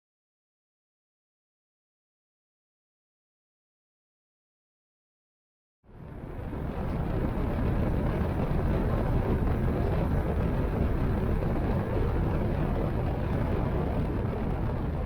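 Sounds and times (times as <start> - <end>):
wind noise: 5.9 - 15.0.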